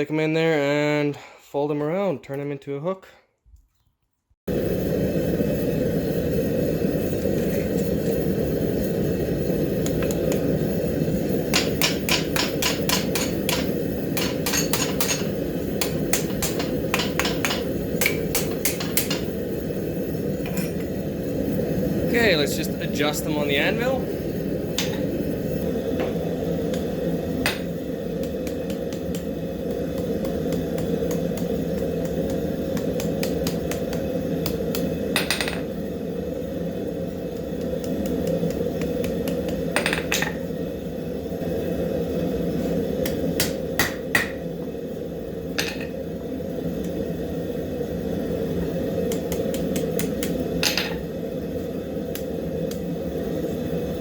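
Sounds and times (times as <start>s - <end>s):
forge roaring: 4.5s - 54.0s
hammer tapping on anvil: 11.5s - 19.3s.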